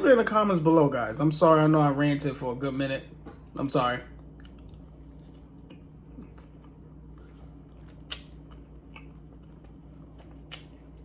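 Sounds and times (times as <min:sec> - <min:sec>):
close-up chewing of food: 0:04.2 - 0:11.0
wet mouth clicks and smacks: 0:07.8 - 0:10.8.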